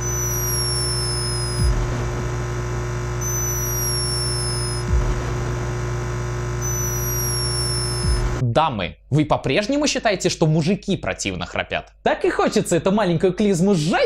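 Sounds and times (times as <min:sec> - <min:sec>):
hummingbird snoring whistle: 0:00.0 - 0:01.7, 0:03.2 - 0:04.9, 0:06.6 - 0:08.1
electrical hum: 0:00.0 - 0:08.4.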